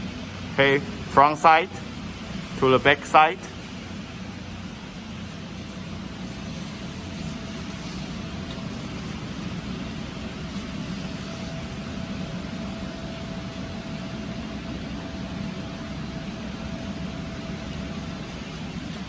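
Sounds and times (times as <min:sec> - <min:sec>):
faint constant whine: 0:00.0 - 0:19.0
machinery humming: 0:00.0 - 0:19.0.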